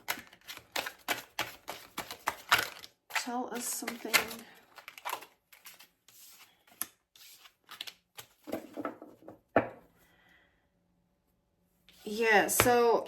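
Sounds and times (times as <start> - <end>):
cards being shuffled: 0.0 - 8.8.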